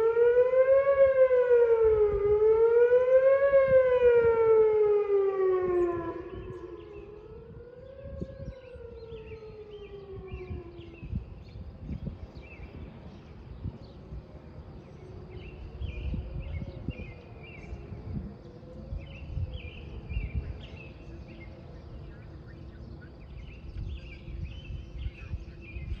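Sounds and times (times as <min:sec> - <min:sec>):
warning siren winding down: 0:00.0 - 0:11.9
faint wavering siren tone: 0:00.0 - 0:26.0.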